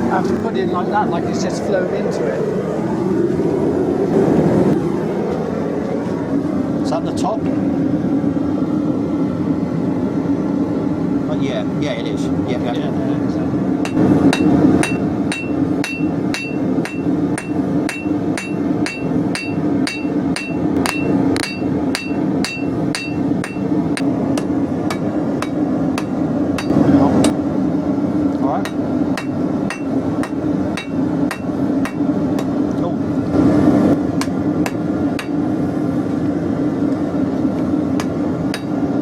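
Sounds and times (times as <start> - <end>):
steady low hum: 0.0 - 39.0
hammer striking steel on anvil: 13.8 - 27.4, 28.6 - 32.6, 34.2 - 35.4, 38.0 - 38.8.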